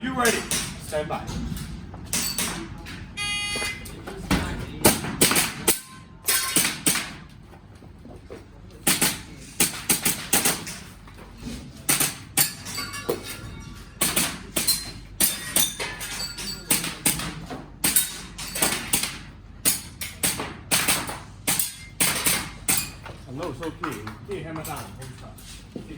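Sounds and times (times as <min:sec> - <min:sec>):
shot timer beep: 0:03.2 - 0:03.9.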